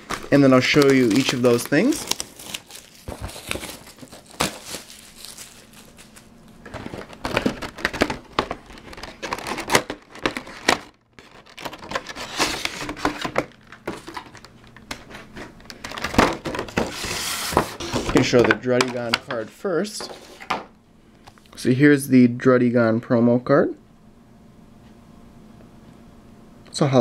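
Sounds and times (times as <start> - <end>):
packaging crinkling and tearing: 0.0 - 18.3.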